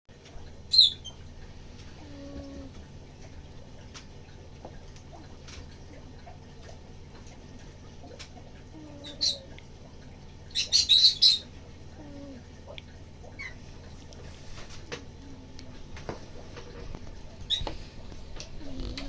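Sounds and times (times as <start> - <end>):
cat snoring: 2.0 - 2.7, 18.6 - 19.0.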